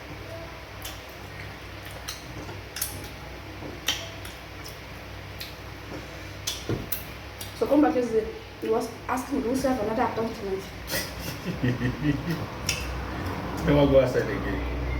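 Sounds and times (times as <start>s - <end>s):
wet mouth clicks and lip smacks: 12.6s - 12.9s.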